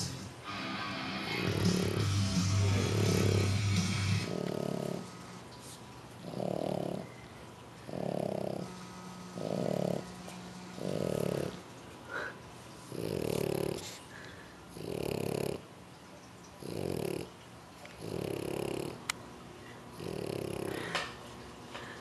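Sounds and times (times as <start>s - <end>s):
dog snoring: 1.0s - 5.4s, 6.2s - 7.2s, 7.9s - 12.2s, 12.9s - 14.0s, 14.7s - 15.7s, 16.6s - 17.3s, 18.0s - 19.1s, 19.9s - 21.0s.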